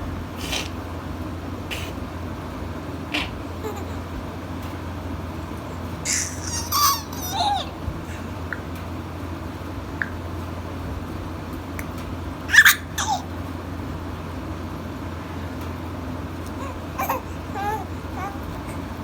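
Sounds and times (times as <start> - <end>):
baby squealing: 6.1 - 7.8, 12.5 - 13.3, 16.5 - 18.8.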